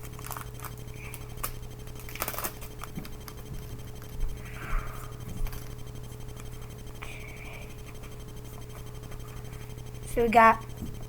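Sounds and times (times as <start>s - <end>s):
foil wrapper crinkling: 0.0s - 4.2s
steady low hum: 0.0s - 11.0s.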